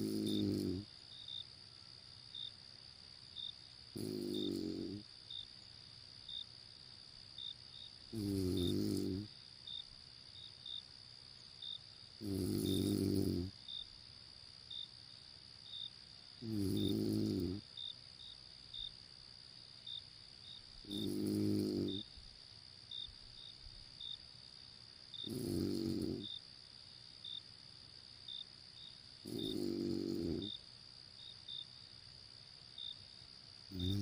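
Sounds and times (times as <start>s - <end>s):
person snoring: 0.0s - 0.8s, 4.0s - 5.0s, 8.1s - 9.3s, 12.2s - 13.5s, 16.4s - 17.6s, 20.9s - 22.0s, 25.3s - 26.3s, 29.2s - 30.5s, 33.7s - 34.0s
crickets chirping: 0.0s - 34.0s.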